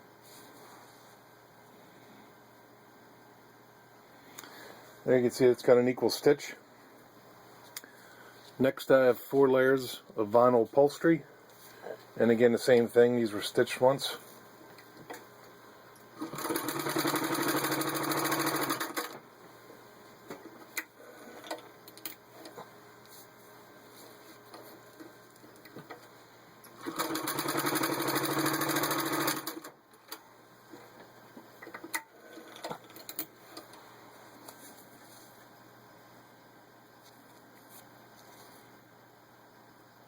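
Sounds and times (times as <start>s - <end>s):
sewing machine running: 16.2s - 19.2s, 26.7s - 29.8s.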